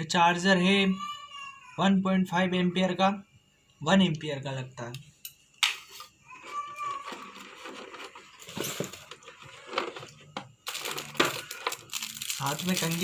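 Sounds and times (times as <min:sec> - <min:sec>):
packaging rustling: 0:07.0 - 0:13.0.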